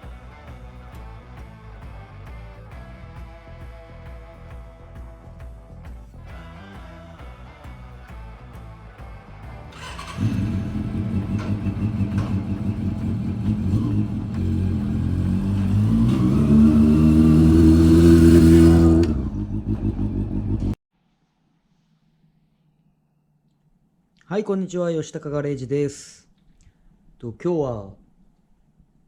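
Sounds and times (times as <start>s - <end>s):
two-stroke motorcycle engine revving: 9.7s - 20.8s.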